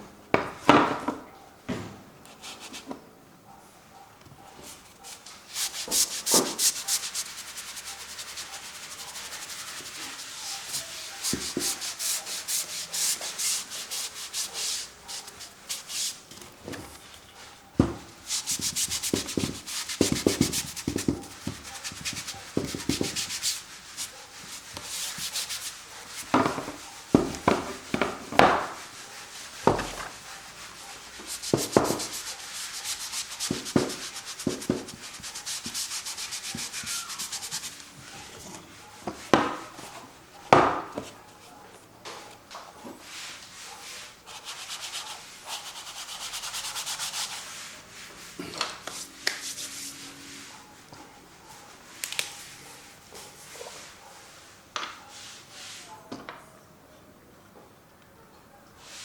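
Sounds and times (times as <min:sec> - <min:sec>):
paint brush scrubbing on canvas: 0:04.7 - 0:16.3, 0:18.2 - 0:40.0, 0:43.0 - 0:50.8.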